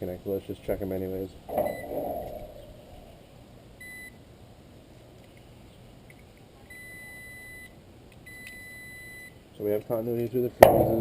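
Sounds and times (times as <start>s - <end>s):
multimeter continuity beeps: 1.5s - 2.7s, 3.8s - 4.2s, 6.7s - 7.7s, 8.3s - 9.3s.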